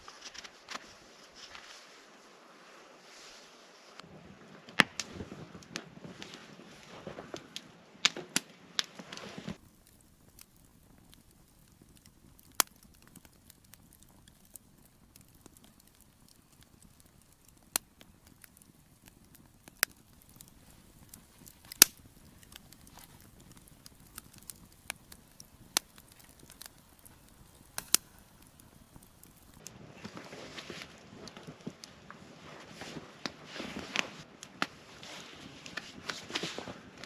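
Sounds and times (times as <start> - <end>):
wood fire crackling: 3.9 - 29.7.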